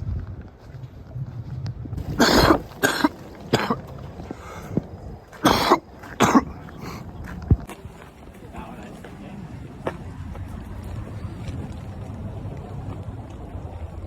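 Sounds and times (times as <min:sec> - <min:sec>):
man coughing: 0:02.1 - 0:03.9, 0:05.4 - 0:07.0.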